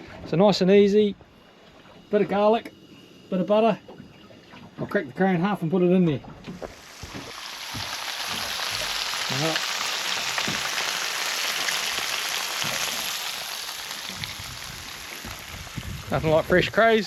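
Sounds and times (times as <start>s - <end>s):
crayfish sizzling in a pan: 6.6s - 17.0s.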